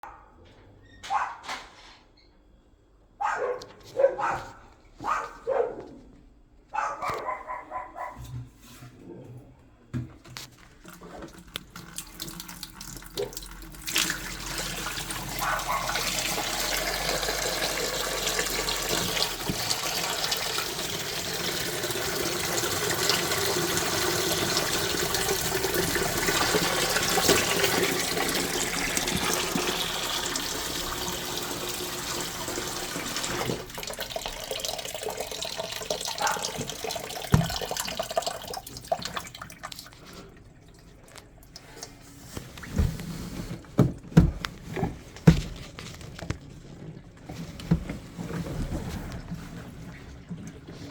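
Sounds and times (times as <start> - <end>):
water running: 10.7 - 50.9.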